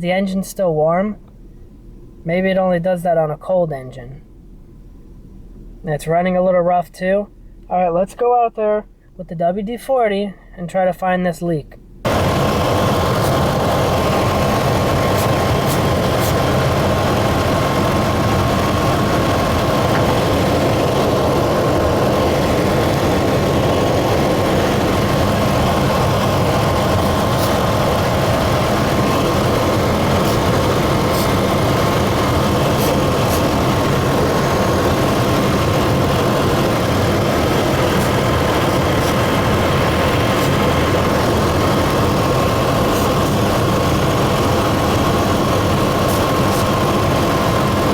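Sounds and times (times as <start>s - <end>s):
truck engine idling roughly: 12.1s - 47.9s.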